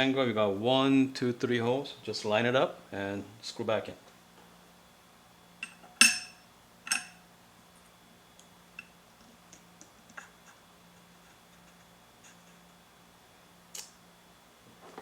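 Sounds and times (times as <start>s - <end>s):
screwdriver clinking on metal: 5.6s - 7.2s.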